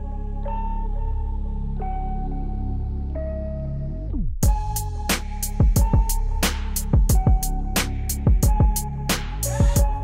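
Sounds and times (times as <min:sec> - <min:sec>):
background music with a beat: 0:04.4 - 0:10.0.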